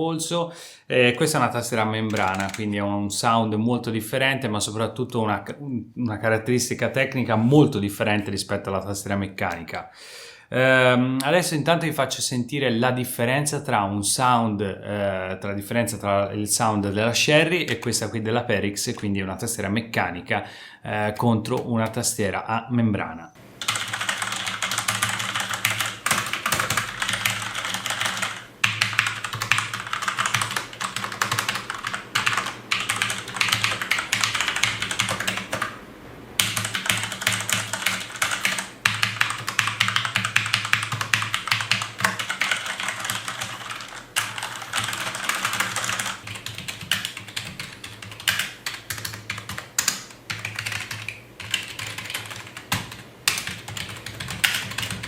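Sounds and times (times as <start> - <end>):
fast typing on keyboards: 2.0 - 2.7, 17.6 - 18.0, 23.6 - 35.8, 36.4 - 55.0.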